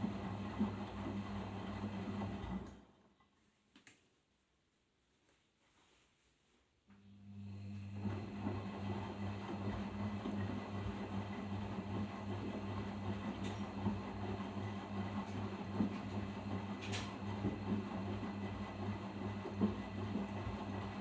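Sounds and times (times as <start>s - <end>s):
washing machine humming: 0.0s - 3.1s, 7.3s - 21.0s.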